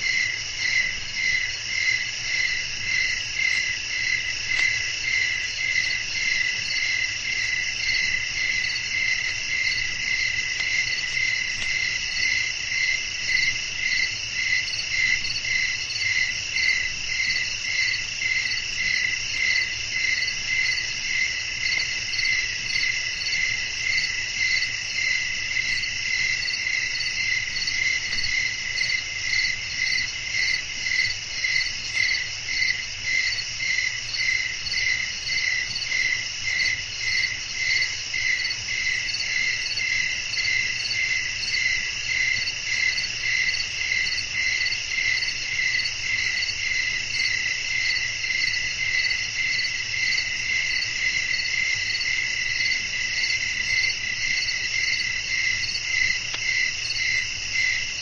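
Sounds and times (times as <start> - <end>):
continuous high insect trill: 0.0 - 58.0
crickets chirping: 0.0 - 58.0.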